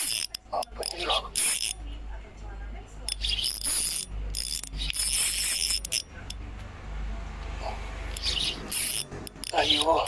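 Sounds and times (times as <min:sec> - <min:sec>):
fishing reel whirring: 0:00.0 - 0:01.8, 0:03.1 - 0:06.1, 0:08.1 - 0:10.0.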